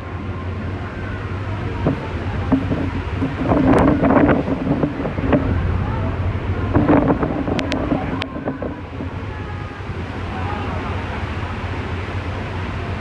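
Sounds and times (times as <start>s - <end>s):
ferry engine hum: 0.0s - 13.0s
wind buffeting microphone: 0.5s - 13.0s
knocks: 1.8s - 5.6s, 6.6s - 9.2s.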